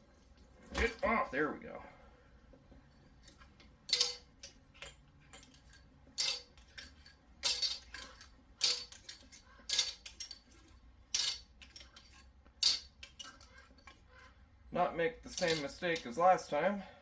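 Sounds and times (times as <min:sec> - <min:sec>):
metal parts clinking: 0:03.0 - 0:14.3, 0:15.2 - 0:16.2.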